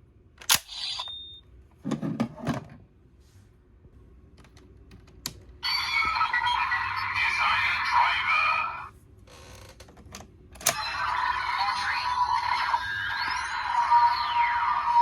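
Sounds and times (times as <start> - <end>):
electronic toy sound effects: 10.6 - 15.0.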